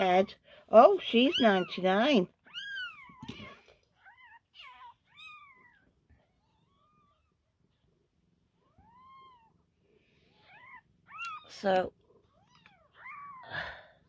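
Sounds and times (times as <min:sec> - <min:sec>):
kittens mewing: 0:01.0 - 0:07.3, 0:10.3 - 0:14.0.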